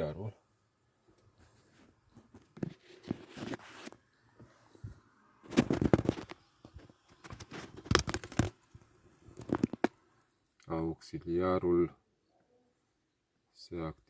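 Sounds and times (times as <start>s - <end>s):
hands handling plastic parts: 5.5s - 10.0s.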